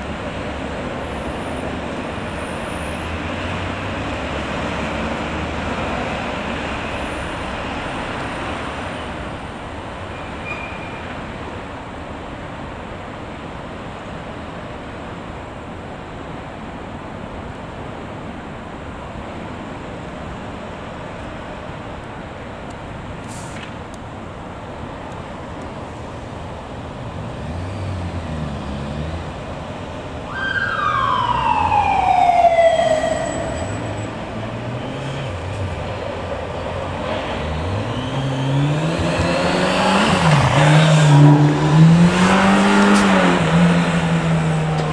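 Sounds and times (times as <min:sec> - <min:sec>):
road traffic noise: 0:00.0 - 0:44.9
police siren wail: 0:30.3 - 0:35.4, 0:40.0 - 0:44.9.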